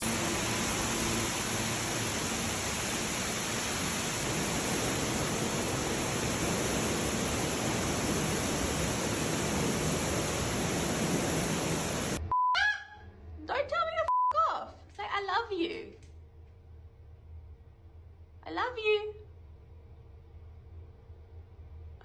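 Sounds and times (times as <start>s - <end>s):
floodwater rushing: 0.0s - 12.2s.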